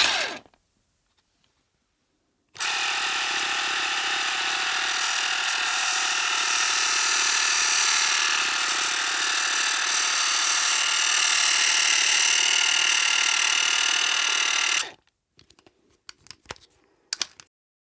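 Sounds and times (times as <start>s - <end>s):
cine camera whirring: 2.6s - 15.0s.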